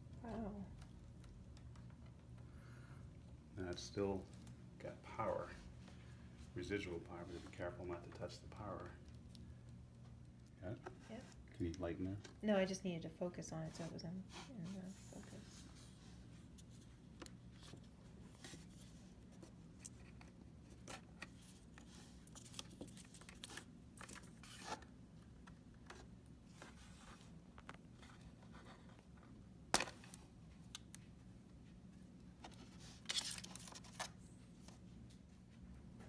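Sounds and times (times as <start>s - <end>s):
low steady hum: 0.0s - 36.0s
scraping and tearing adhesive tape: 24.3s - 24.8s.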